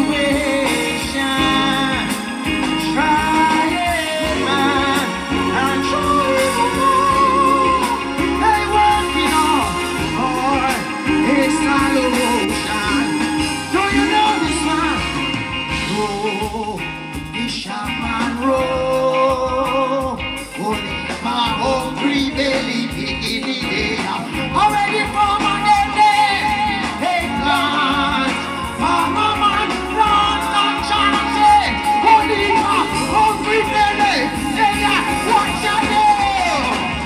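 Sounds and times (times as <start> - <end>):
person singing long notes: 0.0 - 16.8
live reggae band: 0.0 - 37.0.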